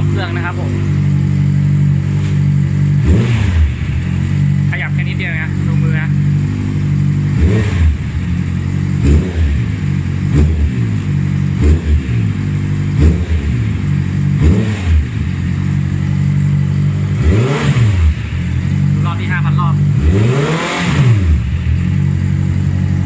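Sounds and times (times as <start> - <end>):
motorcycle engine revving: 0.0 - 23.0.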